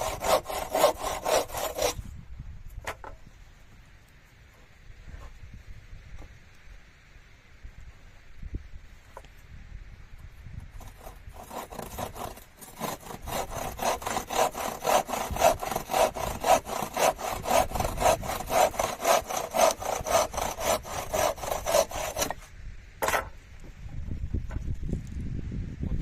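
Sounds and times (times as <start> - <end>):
hand saw cutting wood: 0.0 - 2.0, 10.8 - 23.3.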